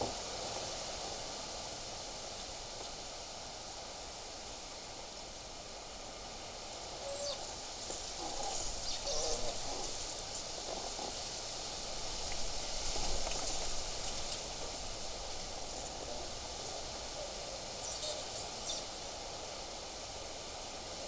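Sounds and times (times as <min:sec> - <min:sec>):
rustling leaves: 0:07.0 - 0:21.0.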